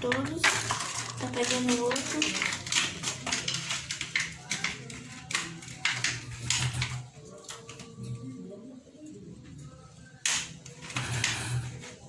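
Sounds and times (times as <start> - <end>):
scissors scraping and tapping: 0.0 - 7.9.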